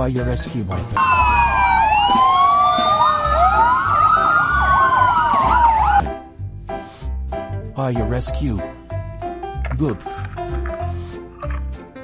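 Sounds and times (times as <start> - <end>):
emergency vehicle sirens wailing: 1.0 - 6.0.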